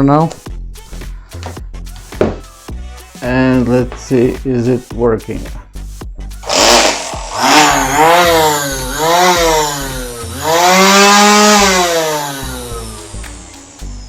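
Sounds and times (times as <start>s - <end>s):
electric grass trimmer whining: 6.4s - 14.0s.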